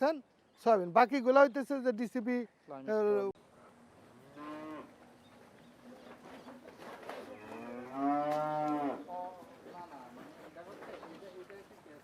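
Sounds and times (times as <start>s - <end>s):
cows mooing: 4.2s - 5.0s, 7.3s - 9.1s.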